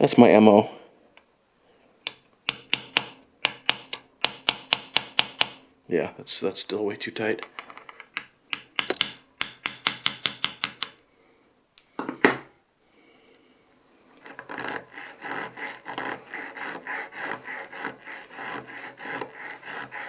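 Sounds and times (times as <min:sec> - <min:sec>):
file rasping on metal: 0:14.2 - 0:20.0.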